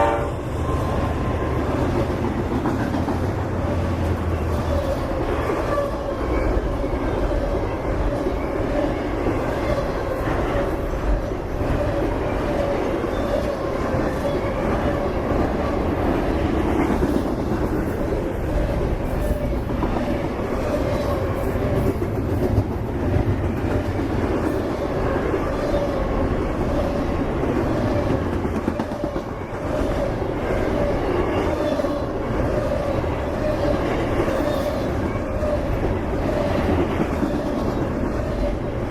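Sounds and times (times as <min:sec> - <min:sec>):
freight train wheels rumbling: 0:00.0 - 0:38.9.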